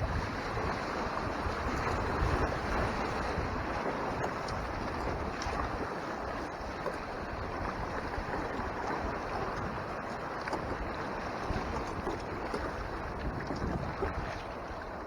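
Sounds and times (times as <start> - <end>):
wind gusting on microphone: 0.0 - 5.8, 10.8 - 14.5
water splashing along hull: 0.0 - 15.0.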